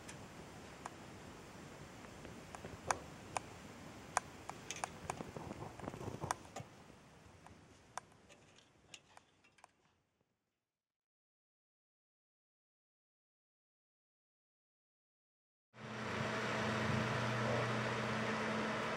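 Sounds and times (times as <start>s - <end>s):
faint steady hiss: 0.0s - 9.9s.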